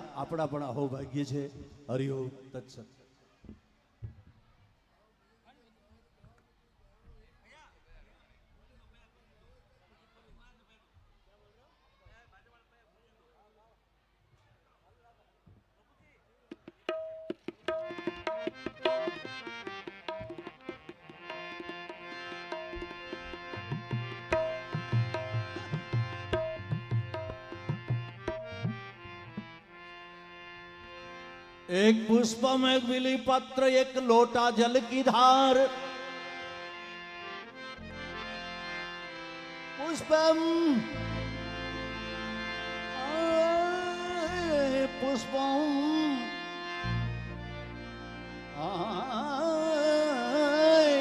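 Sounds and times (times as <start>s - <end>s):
held melodic tones: 35.7s - 50.2s.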